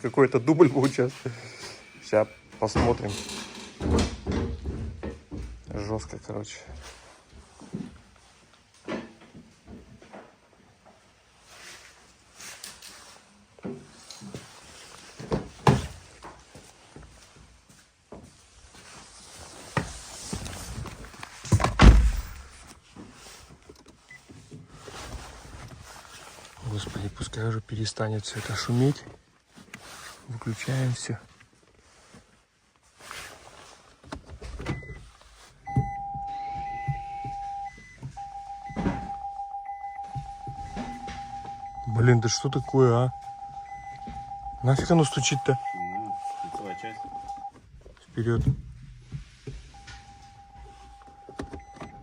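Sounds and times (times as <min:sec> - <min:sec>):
knocks and clunks: 0:02.7 - 0:05.7, 0:21.4 - 0:22.6, 0:35.7 - 0:45.0
electronic warning chime: 0:35.7 - 0:47.5, 0:49.8 - 0:52.0.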